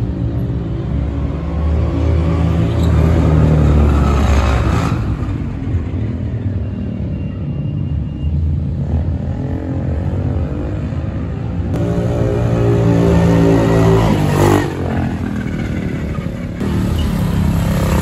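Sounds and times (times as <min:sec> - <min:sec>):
motorcycle engine running: 0:11.8 - 0:18.0.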